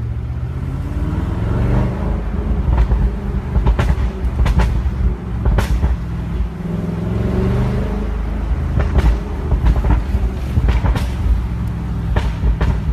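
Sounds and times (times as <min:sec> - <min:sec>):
car exhaust rumbling deeply: 0:00.0 - 0:12.9
exhaust crackles and pops: 0:02.5 - 0:06.6, 0:08.5 - 0:12.9.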